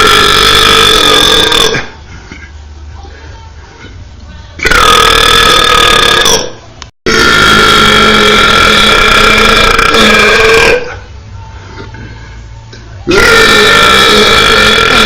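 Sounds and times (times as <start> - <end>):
loud burps: 0.0 - 2.0, 4.6 - 11.0, 13.1 - 15.0.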